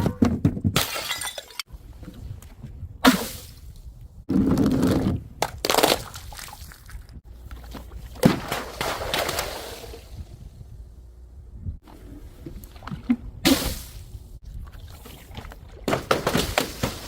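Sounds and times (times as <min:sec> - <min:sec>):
glass bottles smashing: 0:00.8 - 0:01.6
glass pieces scattering: 0:00.8 - 0:01.6.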